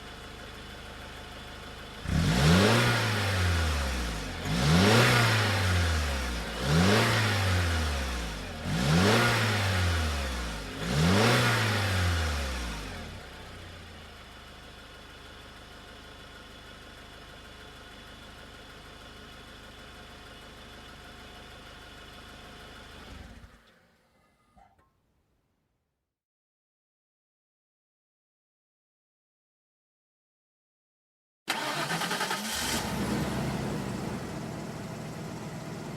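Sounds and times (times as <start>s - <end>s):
car engine idling: 0.0s - 2.3s, 12.4s - 23.8s, 31.6s - 35.9s
car engine revving: 2.0s - 13.4s, 31.5s - 35.9s.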